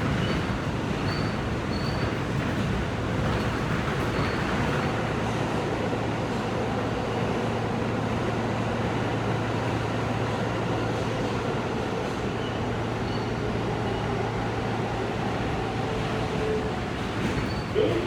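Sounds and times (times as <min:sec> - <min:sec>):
wheels rumbling on rails: 0:00.0 - 0:05.6
subway car humming: 0:00.0 - 0:18.0.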